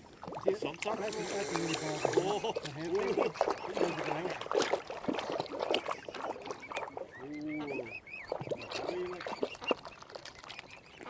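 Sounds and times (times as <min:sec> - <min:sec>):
small splashes: 0:00.0 - 0:11.0
water birds calling: 0:00.0 - 0:11.0
short low bird calls: 0:01.2 - 0:02.6, 0:06.4 - 0:10.0.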